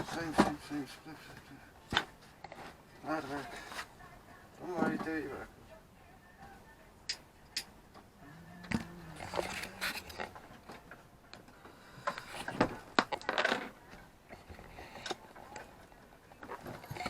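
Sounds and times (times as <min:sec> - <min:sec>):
rustling: 0:00.0 - 0:05.3, 0:08.7 - 0:17.0.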